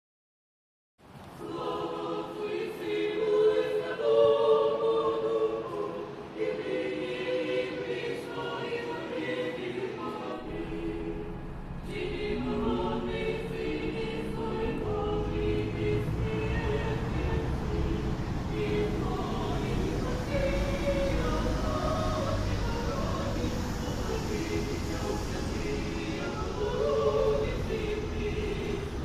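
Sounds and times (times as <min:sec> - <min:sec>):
choir singing unaccompanied: 0:01.2 - 0:29.0
low rumble: 0:10.4 - 0:29.0.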